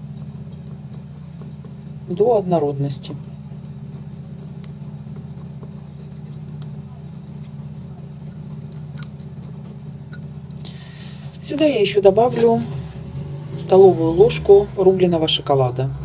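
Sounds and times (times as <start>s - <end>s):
low hum: 10.5s - 16.0s.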